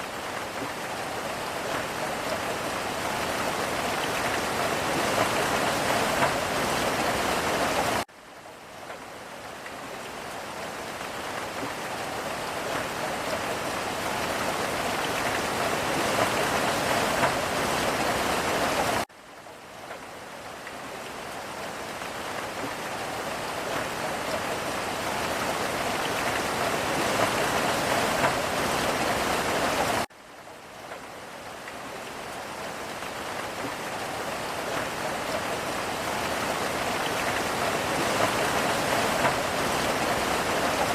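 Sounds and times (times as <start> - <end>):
rain falling: 0.0 - 40.9.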